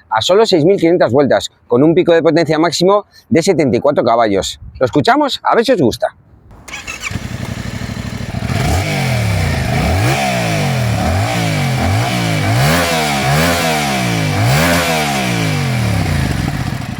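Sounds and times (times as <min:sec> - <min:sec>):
motorcycle engine revving: 0:06.3 - 0:16.9.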